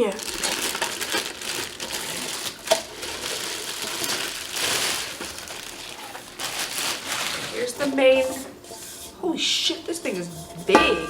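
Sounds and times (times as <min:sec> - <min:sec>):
plastic parts clattering: 0:00.0 - 0:08.4
packaging rustling: 0:00.0 - 0:08.6.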